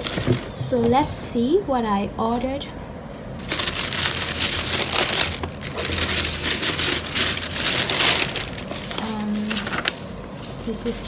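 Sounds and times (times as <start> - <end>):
tissue paper rustling: 0.0 - 0.5, 3.2 - 11.0.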